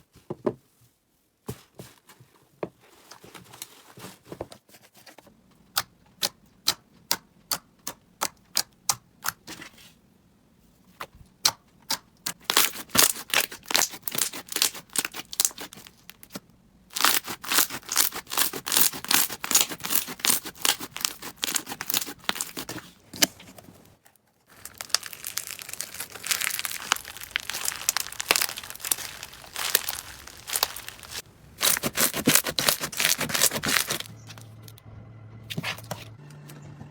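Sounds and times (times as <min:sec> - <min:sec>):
slime clicking and popping: 0:24.6 - 0:34.0.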